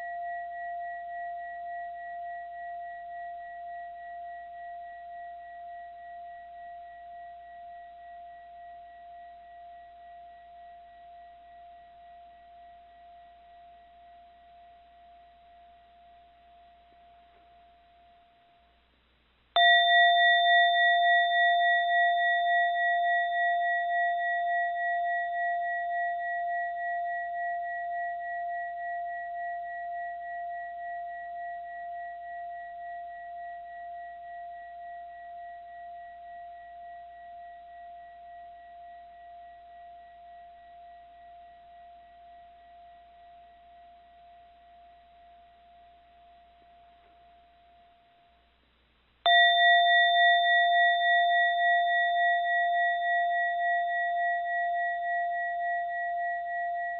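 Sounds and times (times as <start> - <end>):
mindfulness bell ringing: 19.6 - 32.8, 49.3 - 56.9.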